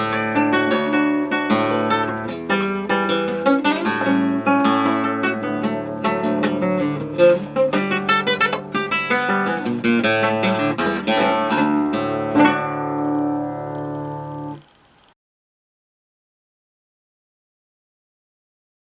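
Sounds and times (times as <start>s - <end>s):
acoustic guitar playing: 0.0s - 15.1s.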